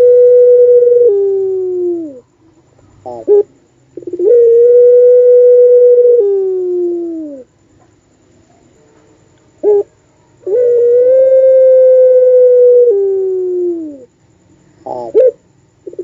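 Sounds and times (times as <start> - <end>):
dove calling: 0.0 - 7.5, 9.6 - 14.1, 14.8 - 16.0.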